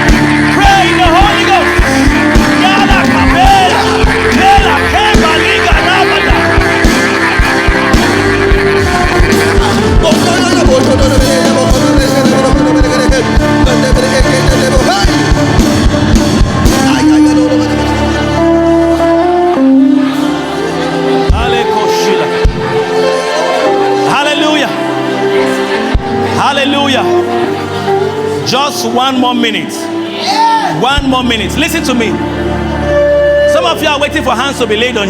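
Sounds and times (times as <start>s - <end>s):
worship music with drum beat: 0.0s - 17.2s, 21.1s - 21.8s, 22.4s - 23.2s, 25.8s - 26.4s.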